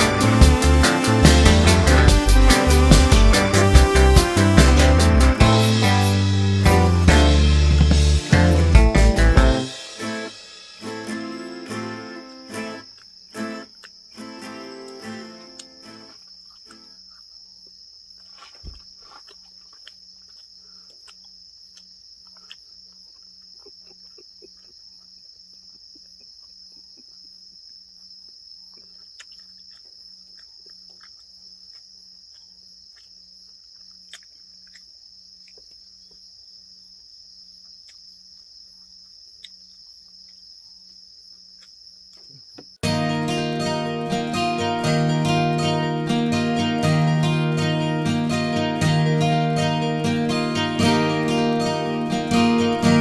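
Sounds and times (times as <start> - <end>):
insects chirring: 0.0 - 53.0.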